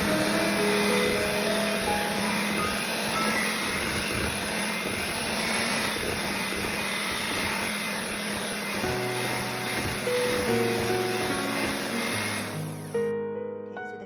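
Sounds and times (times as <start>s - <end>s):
electric hand mixer running: 0.0s - 13.1s.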